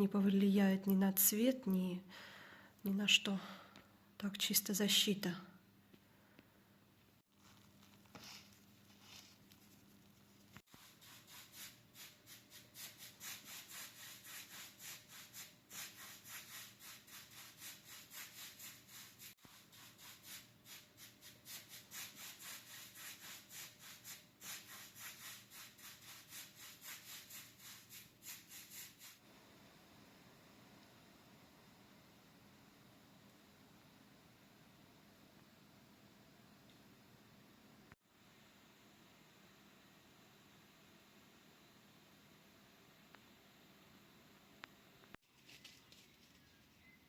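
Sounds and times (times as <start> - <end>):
paintbrush strokes: 7.3 - 29.2.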